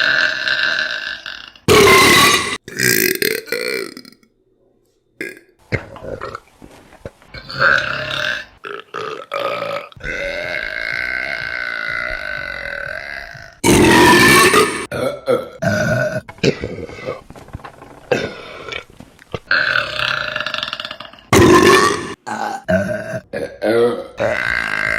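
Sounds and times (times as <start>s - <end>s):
woman burping: 7.7s - 17.2s, 19.5s - 24.9s.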